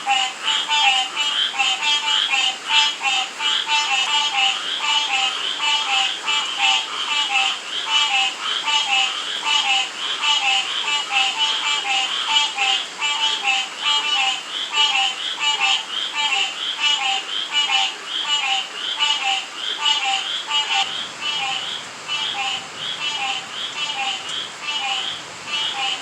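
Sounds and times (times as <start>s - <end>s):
frogs and toads croaking: 0.0s - 26.0s
rainfall hiss: 0.0s - 26.0s
pulsed frog trills: 8.7s - 26.0s.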